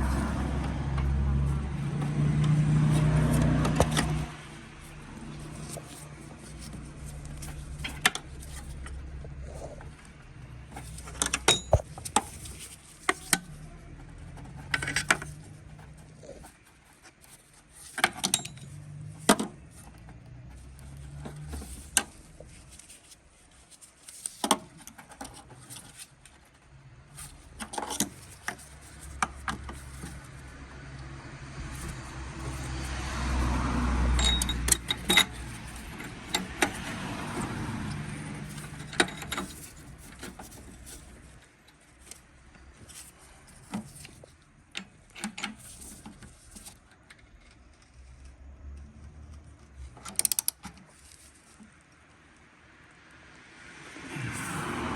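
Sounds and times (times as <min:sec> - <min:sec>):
metallic clinks of tools: 0:34.2 - 0:35.3.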